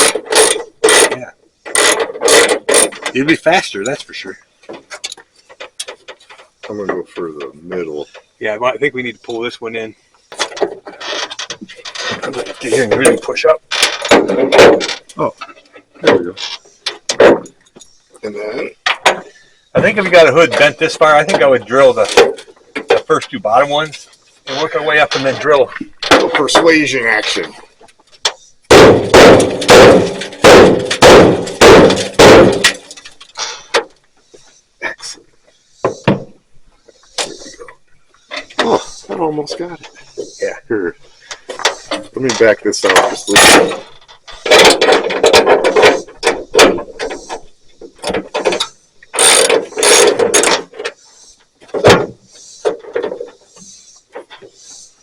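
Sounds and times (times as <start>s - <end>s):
ratcheting tool clicking and whirring: 0.0s - 1.1s, 1.7s - 3.0s, 49.2s - 50.5s.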